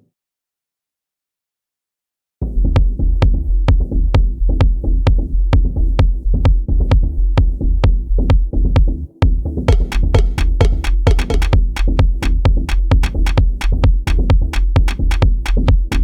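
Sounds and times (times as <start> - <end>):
crisp electronic percussion hits: 9.7 - 16.0.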